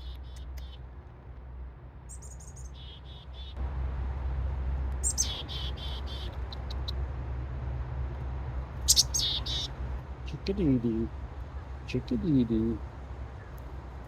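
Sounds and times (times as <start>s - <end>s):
chickadee calling: 0.0s - 0.8s, 2.1s - 3.6s, 5.0s - 7.0s, 8.8s - 12.8s.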